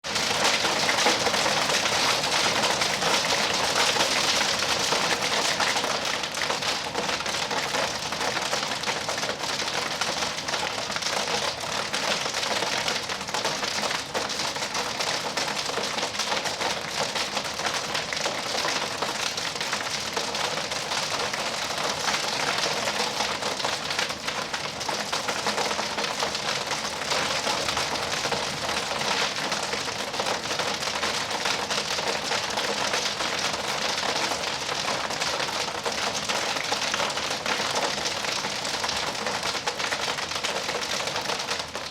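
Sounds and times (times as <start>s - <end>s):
hail and rain falling: 0.1s - 41.9s.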